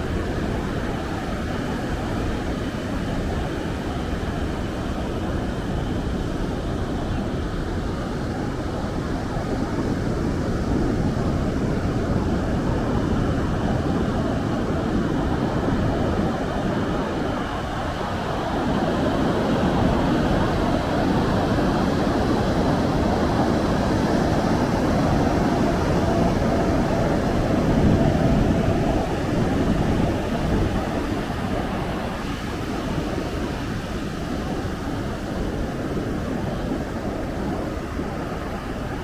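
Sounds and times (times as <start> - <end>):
ocean surf rushing: 19.5 - 39.0.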